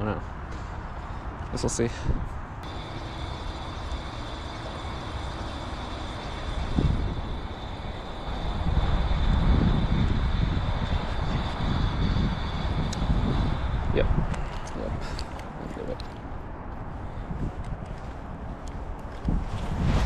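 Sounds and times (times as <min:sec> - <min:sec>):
aircraft passing overhead: 0:02.6 - 0:15.8.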